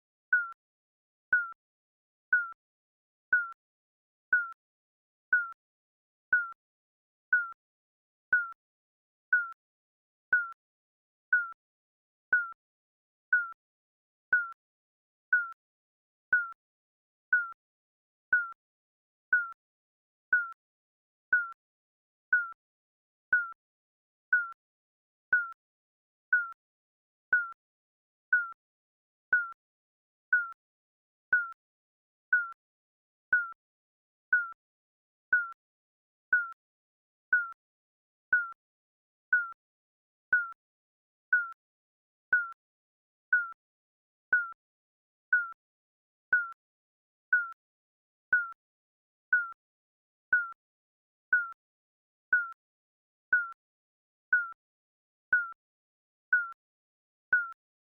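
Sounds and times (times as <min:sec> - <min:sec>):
high electronic timer beeps: 0:00.4 - 0:00.6, 0:02.4 - 0:02.6, 0:05.4 - 0:05.6, 0:07.4 - 0:07.6, 0:11.3 - 0:11.6, 0:19.4 - 0:19.6.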